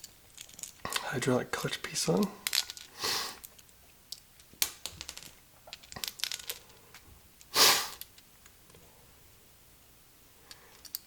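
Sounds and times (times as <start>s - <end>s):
metal parts and tools clicking: 0.0s - 0.9s, 10.5s - 11.0s.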